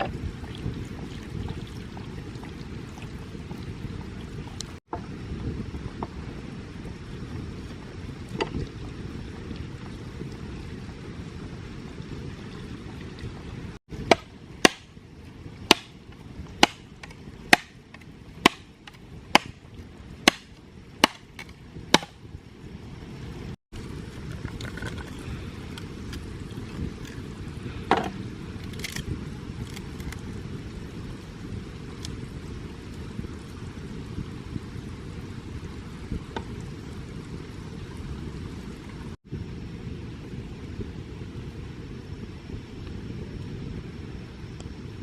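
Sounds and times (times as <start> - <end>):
sharp chopping strokes: 14.1 - 14.9, 15.7 - 16.0, 16.6 - 16.8, 17.5 - 17.8, 18.4 - 18.7, 19.4 - 19.6, 20.2 - 21.2, 21.9 - 22.1.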